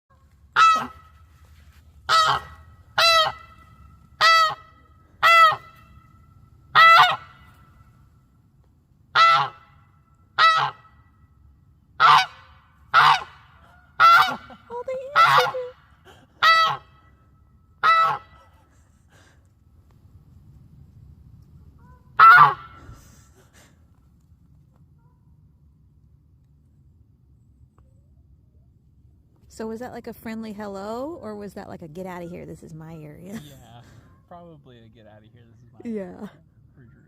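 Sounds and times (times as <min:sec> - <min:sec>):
geese honking: 0:00.5 - 0:01.3, 0:02.0 - 0:07.8, 0:09.1 - 0:09.8, 0:10.4 - 0:11.1, 0:12.0 - 0:15.8, 0:16.4 - 0:17.1, 0:17.8 - 0:18.5, 0:22.2 - 0:22.8
long low goose call: 0:00.5 - 0:01.3, 0:02.1 - 0:07.9, 0:09.1 - 0:09.8, 0:10.4 - 0:11.1, 0:12.0 - 0:18.8, 0:21.8 - 0:23.3.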